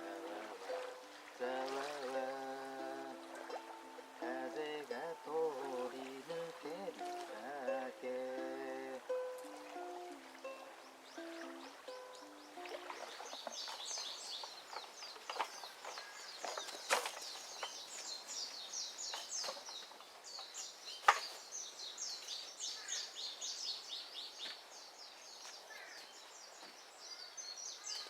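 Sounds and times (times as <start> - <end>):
small birds chirping: 9.0 - 28.0.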